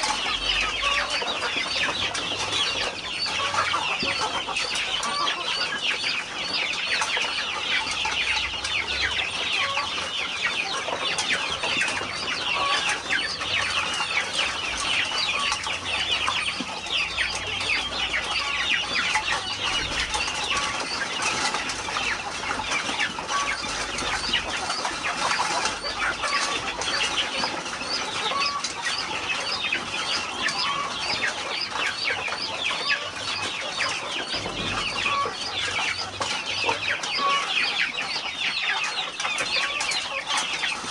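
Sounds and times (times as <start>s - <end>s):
chickens clucking: 0.0s - 40.9s.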